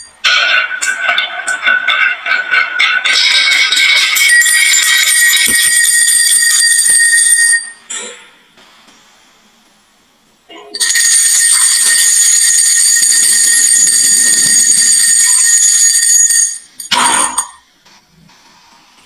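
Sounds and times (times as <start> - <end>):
marbles rolling down track: 0.0 - 7.8, 10.8 - 17.6.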